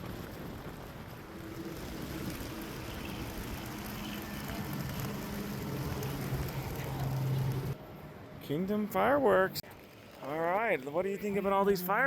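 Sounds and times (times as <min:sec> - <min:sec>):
low engine hum: 0:00.0 - 0:07.8
road noise: 0:00.0 - 0:12.0.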